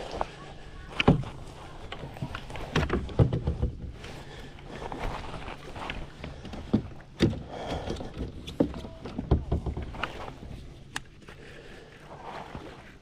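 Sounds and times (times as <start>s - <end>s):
knocks against a kayak: 2.0s - 4.2s, 6.2s - 10.4s.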